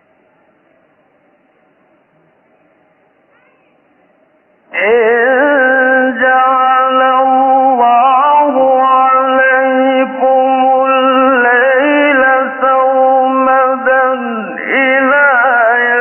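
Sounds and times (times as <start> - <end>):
man reciting melodically: 4.7 - 16.0.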